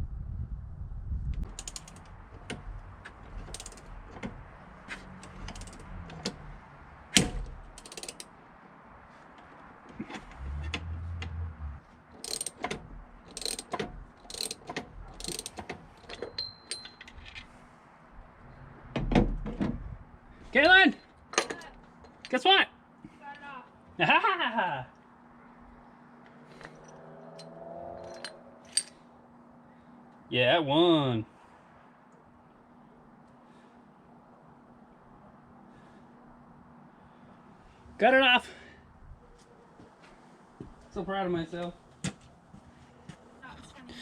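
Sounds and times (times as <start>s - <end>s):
ratchet clicking: 1.4s - 4.2s, 5.2s - 6.3s, 7.2s - 8.3s, 12.2s - 17.0s
metal hand tools clanking: 12.2s - 17.3s.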